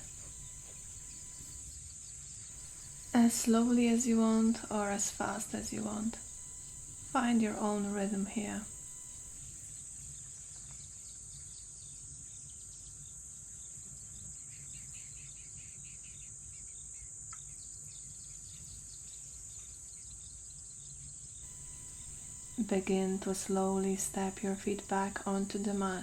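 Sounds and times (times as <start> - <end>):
insect drone: 0.0 - 1.7, 2.6 - 9.6, 21.4 - 26.0.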